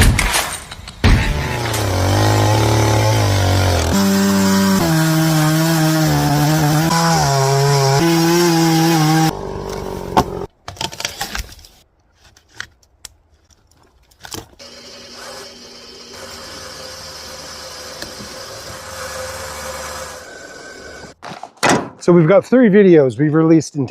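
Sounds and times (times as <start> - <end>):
chainsaw cutting wood: 1.1 - 10.5, 14.6 - 21.2.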